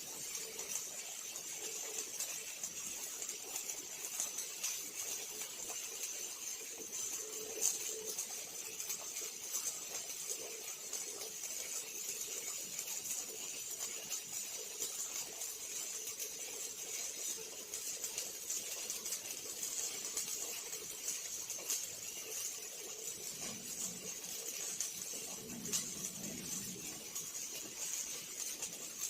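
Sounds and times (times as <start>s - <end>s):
welding arc crackling hiss: 14.6s - 29.0s.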